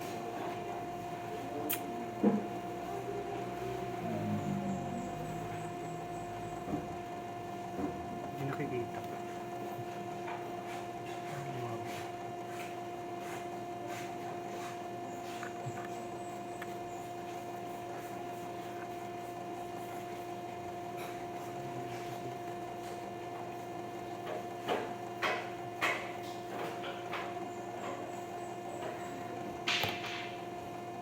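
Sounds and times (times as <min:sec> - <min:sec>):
steady electrical hum: 0:00.0 - 0:31.0.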